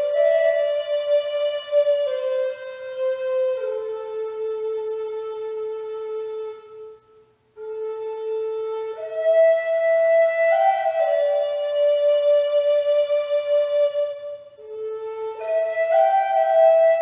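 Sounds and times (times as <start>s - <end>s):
flute playing long notes: 0.0s - 17.0s.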